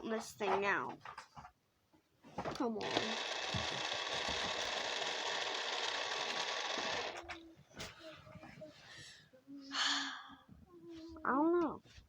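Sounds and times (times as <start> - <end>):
car starter motor cranking: 2.8 - 7.2.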